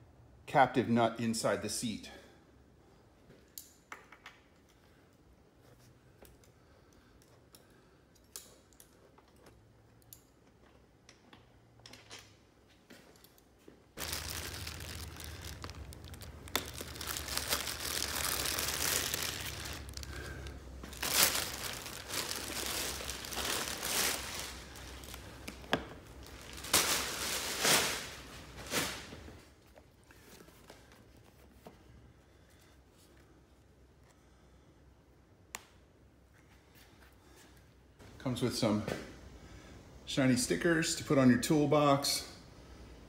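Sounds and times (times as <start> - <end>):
packaging crinkling and tearing: 14.0 - 29.0.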